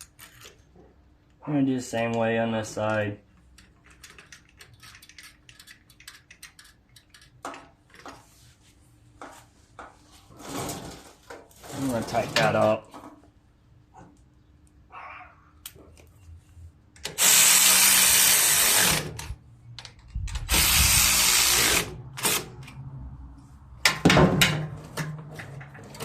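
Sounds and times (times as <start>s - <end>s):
power drill-driver running: 17.2s - 19.2s, 20.5s - 22.4s.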